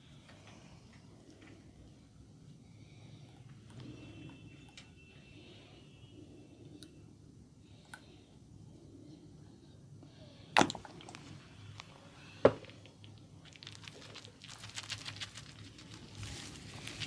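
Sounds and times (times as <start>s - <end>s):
hair crackling: 13.0s - 17.0s.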